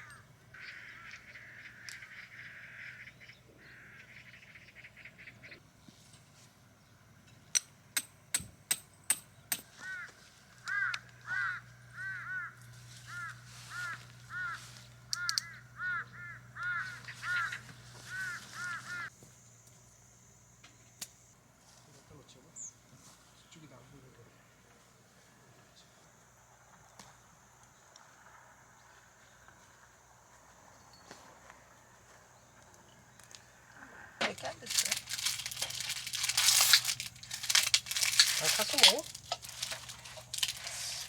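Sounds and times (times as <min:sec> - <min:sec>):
crows cawing: 0:00.0 - 0:05.6, 0:09.6 - 0:19.1, 0:33.2 - 0:41.0.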